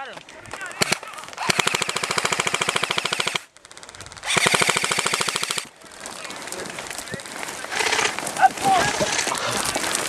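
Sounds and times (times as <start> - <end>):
airsoft gun firing bursts: 0.8 - 5.7, 7.7 - 8.2.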